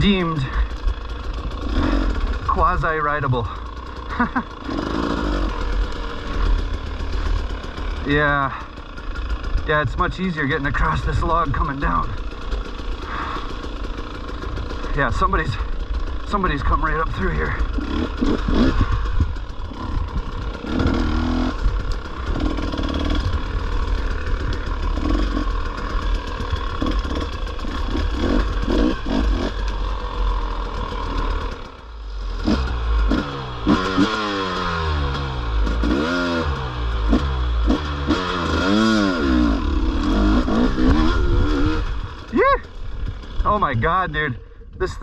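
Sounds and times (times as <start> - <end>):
dirt bike engine revving: 0.0 - 44.6.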